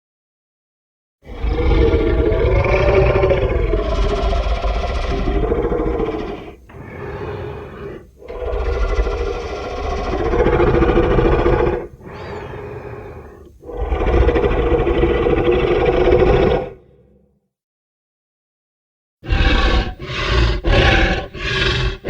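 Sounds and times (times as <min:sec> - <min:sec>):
monster roars: 0:01.3 - 0:17.0, 0:19.2 - 0:22.0.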